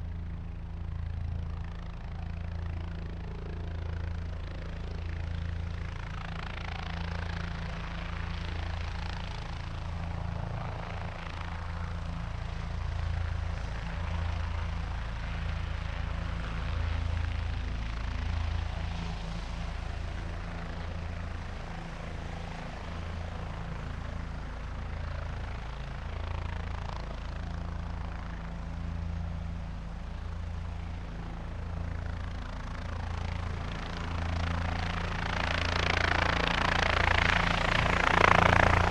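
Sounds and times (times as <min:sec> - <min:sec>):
helicopter rotor and turbine: 0:00.0 - 0:38.9.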